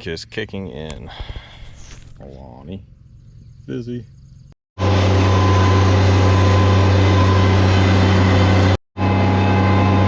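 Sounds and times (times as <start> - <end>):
engine humming with whine: 2.8 - 10.0.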